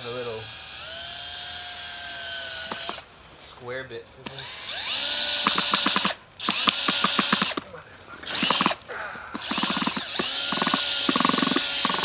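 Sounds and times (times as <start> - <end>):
power drill driving a screw: 0.0 - 3.1, 4.2 - 7.6, 8.2 - 8.8, 9.4 - 12.0
rapid clicking: 9.4 - 12.0.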